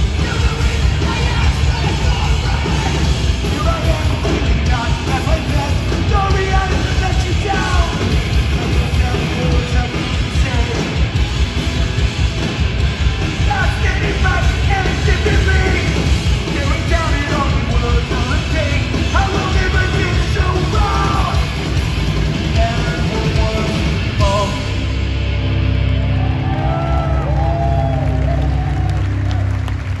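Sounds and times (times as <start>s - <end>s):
shouted vocals: 0.0s - 8.0s, 26.0s - 29.6s
pounding drums: 0.0s - 25.0s
bass guitar: 0.0s - 30.0s
distorted guitars: 0.0s - 30.0s.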